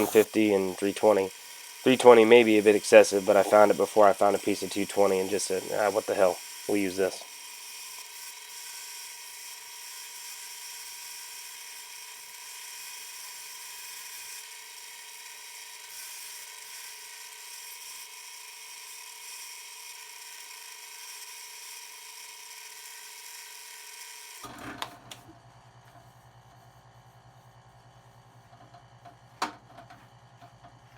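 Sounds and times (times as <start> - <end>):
drill press whining: 0.0 - 7.1
sandpaper hissing on wood: 0.0 - 7.3.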